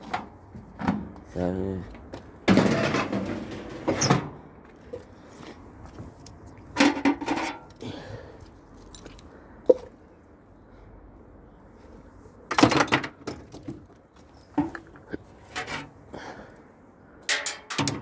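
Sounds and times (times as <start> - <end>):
metal parts clattering: 17.3 - 18.0.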